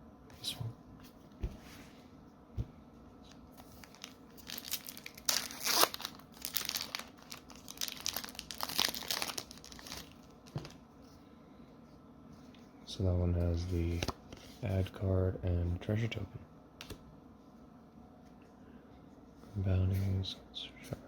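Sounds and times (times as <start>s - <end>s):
foil wrapper tearing and crinkling: 3.6s - 10.8s.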